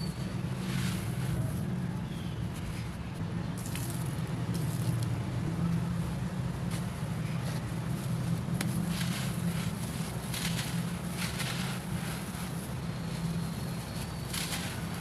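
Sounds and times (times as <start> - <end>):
faint crackles: 6.6 - 15.0.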